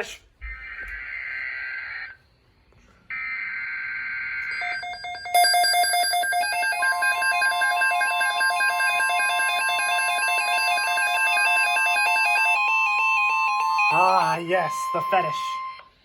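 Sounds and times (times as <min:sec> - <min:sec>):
harsh digital data bursts: 0:13.9 - 0:15.7.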